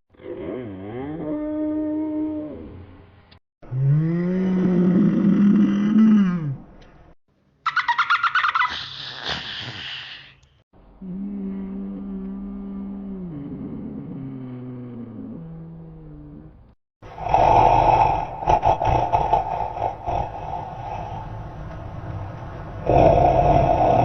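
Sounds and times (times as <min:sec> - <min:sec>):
harsh pulsing dinosaur roar: 0:03.6 - 0:06.5, 0:11.0 - 0:22.2, 0:22.8 - 0:24.0
low growl stepping down: 0:10.9 - 0:24.0.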